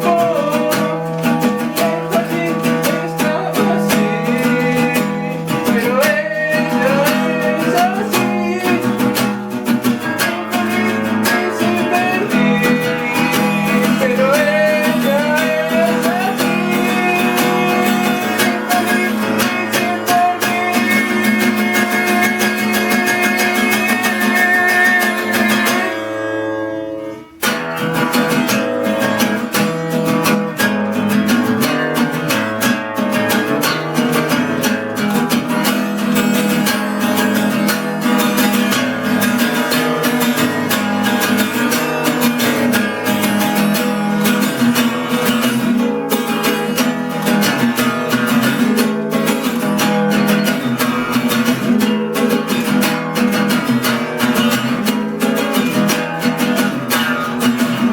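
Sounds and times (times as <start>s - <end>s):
guitar strummed and plucked: 0.0s - 57.9s.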